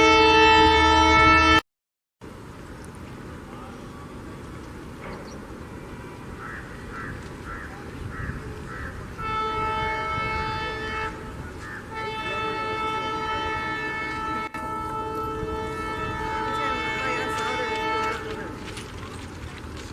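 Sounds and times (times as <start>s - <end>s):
locomotive air horn blasts: 0.0s - 1.6s, 9.1s - 19.2s
train rumble: 2.2s - 19.9s.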